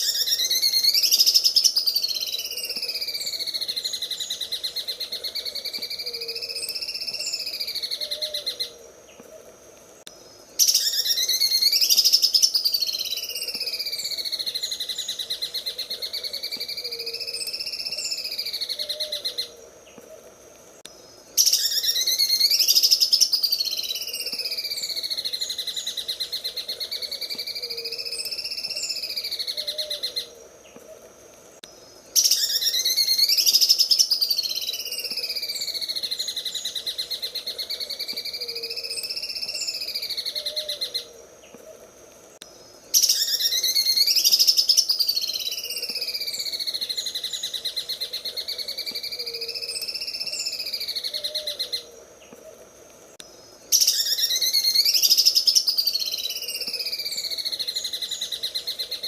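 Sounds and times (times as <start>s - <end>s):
bird singing rattling trill: 0.0s - 8.6s, 21.4s - 30.2s, 32.2s - 41.1s, 42.9s - 51.8s
faint high chirps: 31.6s - 41.7s.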